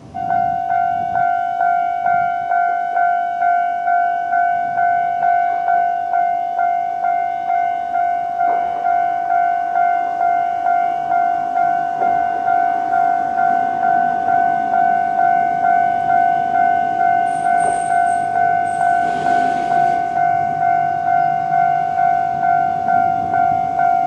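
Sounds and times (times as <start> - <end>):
level crossing bell dinging: 0.2 - 24.0
brief hiss: 18.9 - 20.0.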